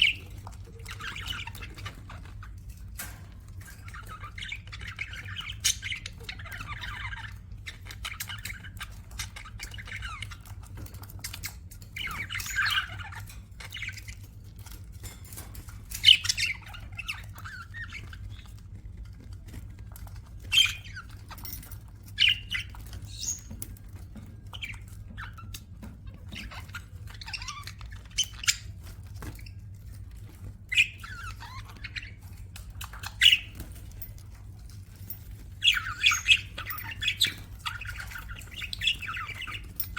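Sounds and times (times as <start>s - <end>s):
budgerigars chattering: 0.0s - 14.3s, 15.9s - 18.5s, 20.4s - 23.7s, 30.6s - 34.3s, 35.4s - 39.9s.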